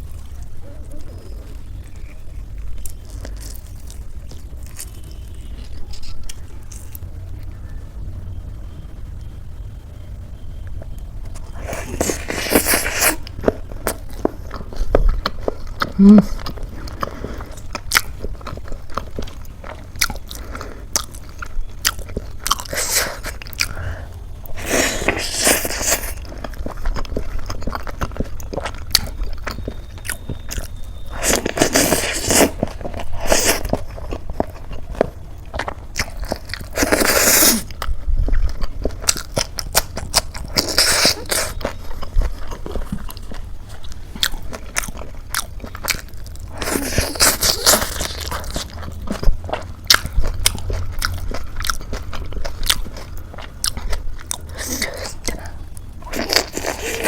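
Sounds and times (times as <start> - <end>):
crunching bites: 11.3 - 23.8, 24.5 - 57.0
wet chewing clicks: 11.3 - 57.0.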